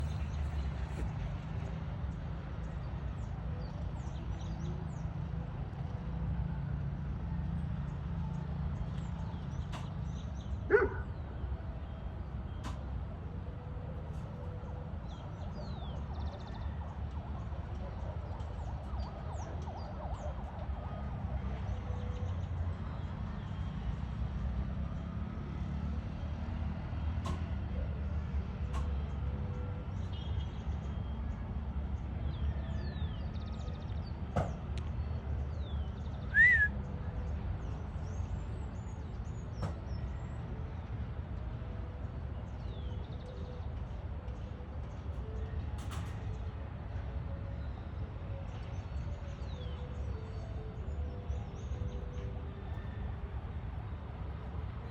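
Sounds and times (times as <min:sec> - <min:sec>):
short pitched calls: 0:36.3 - 0:36.7
faint bird chirps: 0:36.3 - 0:36.8.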